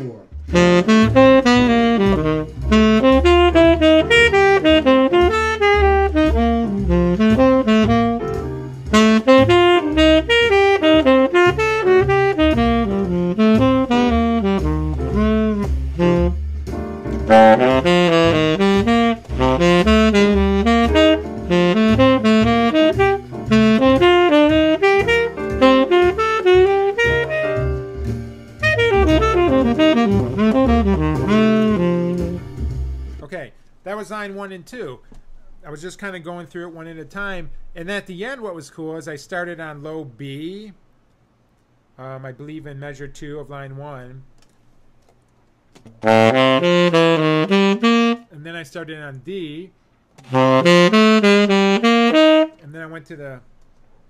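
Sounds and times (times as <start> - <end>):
jazz backing track: 0.0 - 33.3, 45.7 - 49.6, 50.2 - 54.0
bass: 0.0 - 41.0, 41.9 - 54.0
tenor saxophone playing: 0.4 - 16.6, 17.2 - 33.2, 46.0 - 48.4, 50.2 - 52.7.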